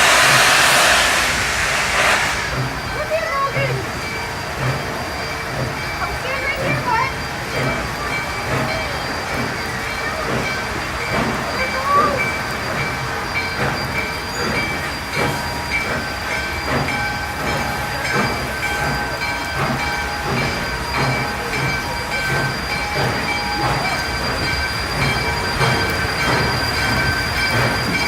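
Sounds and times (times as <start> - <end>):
steady high tones: 0.0 - 28.0
steam locomotive chuffing: 0.0 - 28.0.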